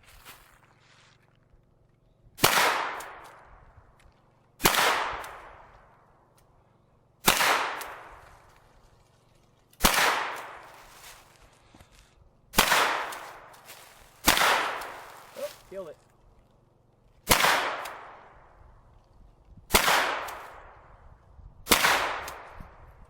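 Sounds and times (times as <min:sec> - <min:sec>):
carbine shots with echo: 0:02.4 - 0:03.6, 0:04.6 - 0:05.9, 0:07.2 - 0:08.4, 0:09.8 - 0:10.8, 0:12.5 - 0:13.6, 0:14.2 - 0:15.5, 0:17.2 - 0:18.5, 0:19.7 - 0:20.9, 0:21.7 - 0:22.8.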